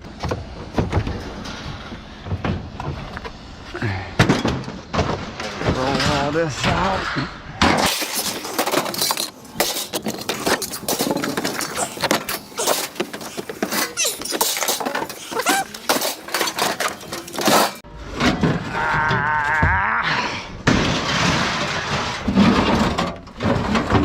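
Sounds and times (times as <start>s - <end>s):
scrap metal clanking and crashing: 4.2s - 18.7s, 20.6s - 24.0s.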